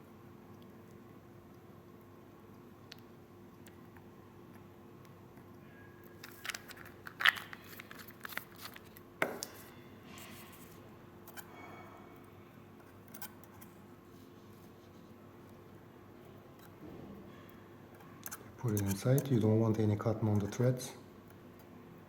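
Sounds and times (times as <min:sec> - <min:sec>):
small tools clicking and tapping: 0:18.0 - 0:19.4.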